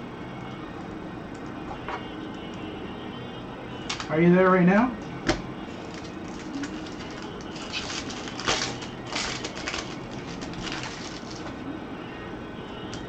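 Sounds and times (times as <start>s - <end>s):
card wrappers crinkling: 3.9s - 4.1s, 5.7s - 11.6s.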